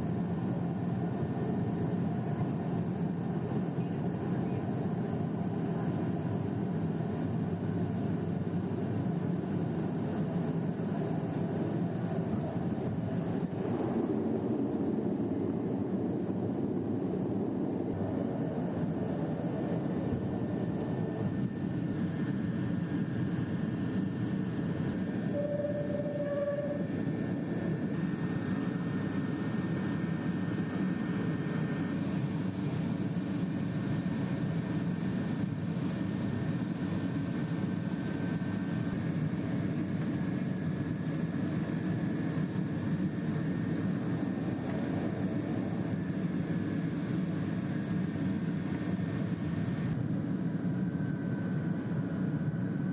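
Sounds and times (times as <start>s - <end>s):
turboprop engine cabin drone: 0.0s - 52.9s
faint tone: 25.2s - 26.9s.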